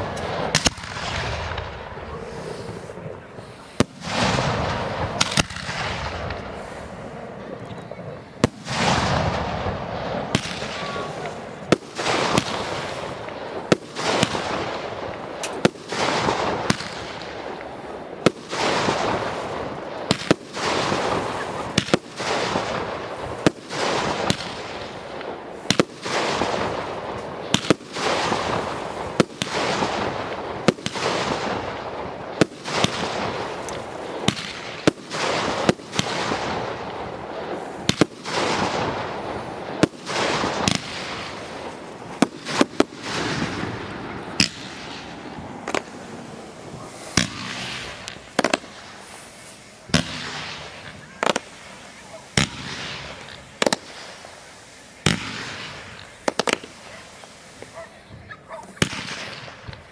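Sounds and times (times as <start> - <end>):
fireworks bangs: 0.0 - 59.9
hissing crackle of fireworks: 0.0 - 59.9.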